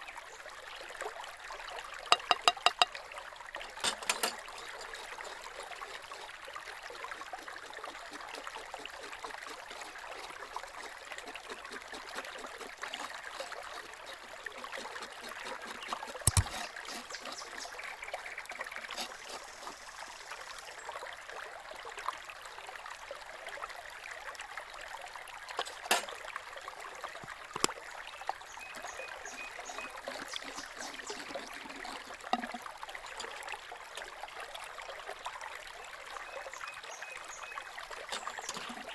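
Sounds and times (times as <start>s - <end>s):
trickle of running water: 0.0s - 38.9s
sharp knocks: 2.2s - 2.9s.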